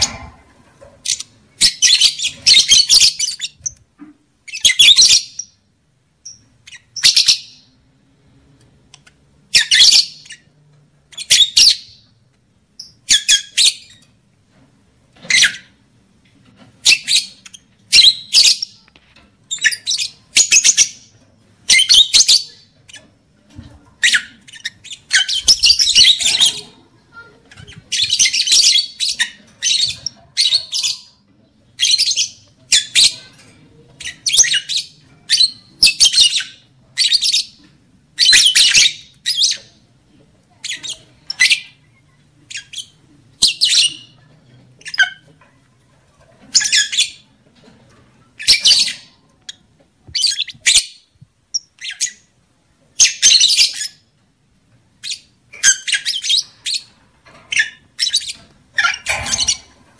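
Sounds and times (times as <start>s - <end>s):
lovebirds chattering squawks: 23.9s - 39.9s, 40.5s - 45.5s, 55.0s - 59.9s.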